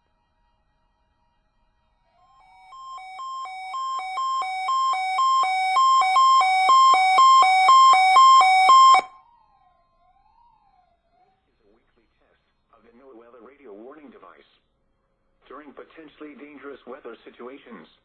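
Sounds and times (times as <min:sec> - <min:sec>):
electronic two-tone alarm: 0:02.4 - 0:09.3
faint wailing tone: 0:02.4 - 0:09.6.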